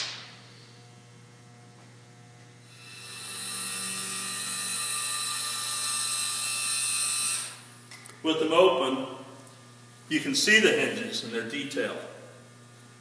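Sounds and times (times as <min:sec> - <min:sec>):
low steady hum: 0:00.0 - 0:13.0
electric motors whining: 0:00.8 - 0:08.0.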